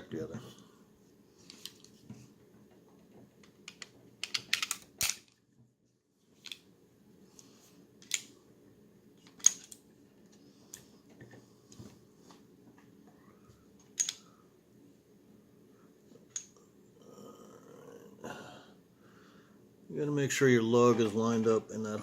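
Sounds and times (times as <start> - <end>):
faint low hum: 0.0 - 22.0
pistol parts clicking: 3.4 - 5.4, 8.0 - 8.3, 9.2 - 9.8, 13.9 - 14.2.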